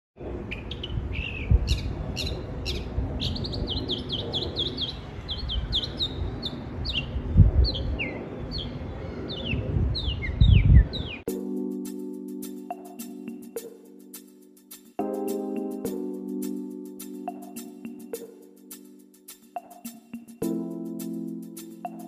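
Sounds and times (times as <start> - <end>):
small birds chirping: 0.5 - 11.3.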